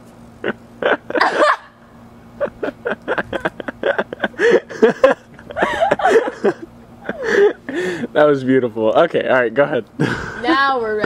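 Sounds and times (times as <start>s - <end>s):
faint low hum: 0.0s - 11.0s
person laughing: 0.4s - 1.8s, 2.4s - 8.1s, 10.0s - 11.0s.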